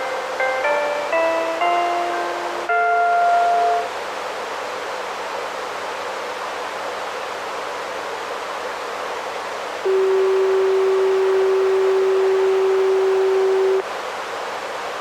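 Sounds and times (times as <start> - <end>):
radio static hiss: 9.8 - 13.8
steady tone: 9.9 - 13.8.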